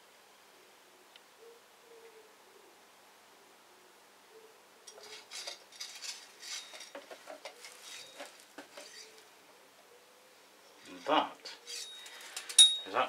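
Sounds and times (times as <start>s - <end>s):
small tools clinking and rattling: 4.9s - 9.1s, 10.9s - 13.0s.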